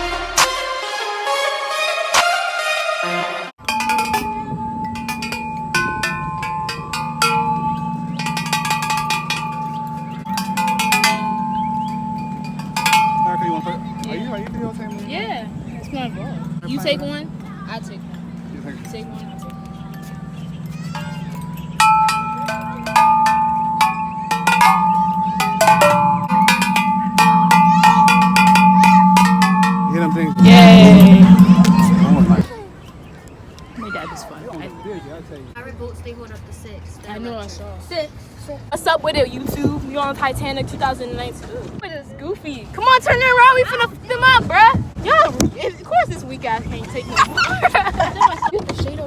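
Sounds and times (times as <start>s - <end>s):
bell-like chime music: 3.6s - 15.7s, 18.8s - 32.5s
steady low hum: 3.6s - 32.5s.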